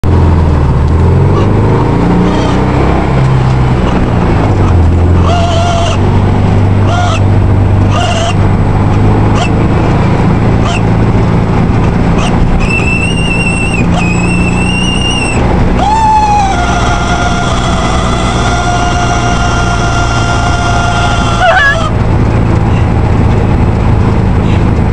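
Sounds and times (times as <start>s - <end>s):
car engine droning: 0.0s - 24.9s
speedometer screeching: 2.2s - 2.9s, 3.8s - 6.1s, 12.1s - 22.0s.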